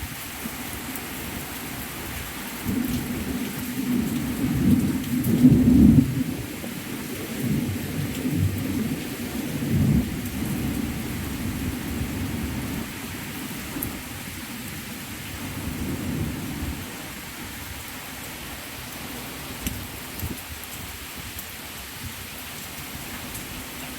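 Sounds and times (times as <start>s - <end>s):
torrential rain pouring: 0.0s - 23.9s
deep rumble of thunder: 2.6s - 14.3s, 15.2s - 17.8s.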